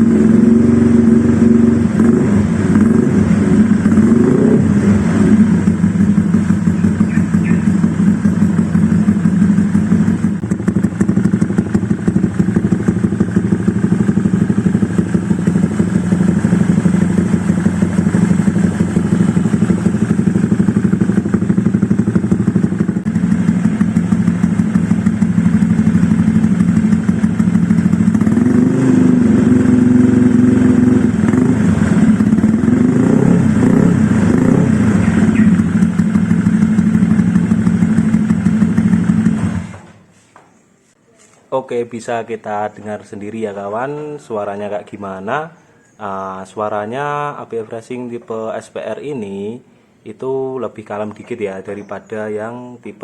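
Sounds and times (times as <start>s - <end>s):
scooter engine idling: 0.0s - 40.2s.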